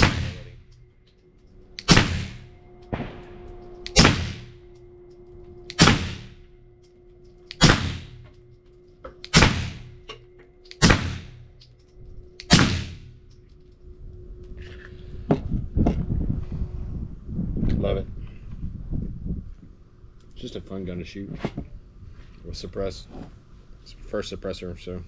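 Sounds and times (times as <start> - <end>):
suppressed pistol shots: 0.0 - 0.6, 1.8 - 3.3, 3.9 - 4.6, 5.7 - 6.4, 7.5 - 8.2, 9.2 - 10.0, 10.7 - 11.4, 12.4 - 13.1.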